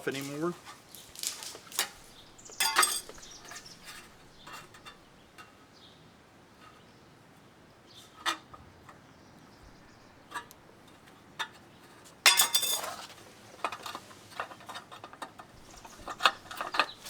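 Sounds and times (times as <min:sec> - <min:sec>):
metal snips and clinks: 0:01.2 - 0:05.0, 0:12.3 - 0:13.9.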